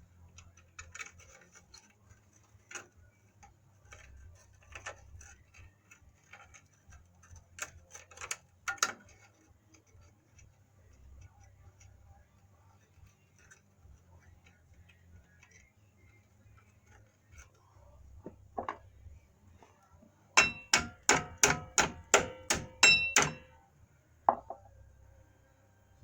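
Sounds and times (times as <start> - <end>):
soft knocks: 18.2 - 18.8, 24.3 - 24.7
hammer striking metal: 20.4 - 23.6.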